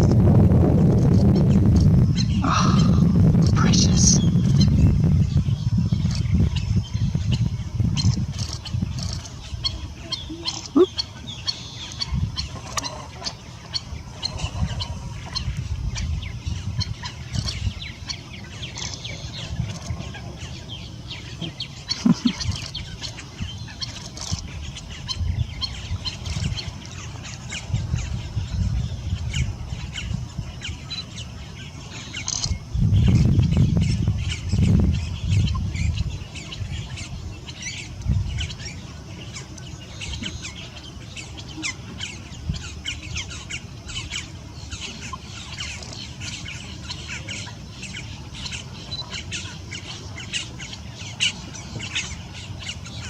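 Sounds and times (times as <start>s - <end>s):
low rumble: 0.0s - 10.0s
birds chirping and calling: 0.0s - 53.0s.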